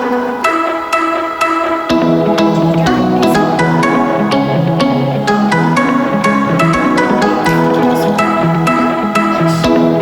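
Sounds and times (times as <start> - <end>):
bright instrumental tune: 0.0 - 10.0
plucked beat: 1.9 - 10.0.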